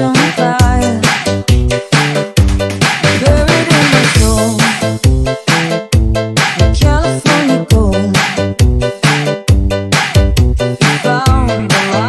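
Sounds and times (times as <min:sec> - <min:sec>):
upbeat funk music: 0:00.0 - 0:12.0.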